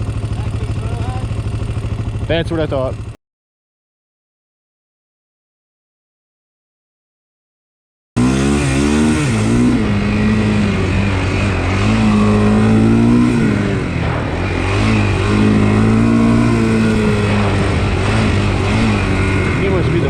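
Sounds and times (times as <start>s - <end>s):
atv engine revving: 0.0s - 3.2s, 8.2s - 20.0s.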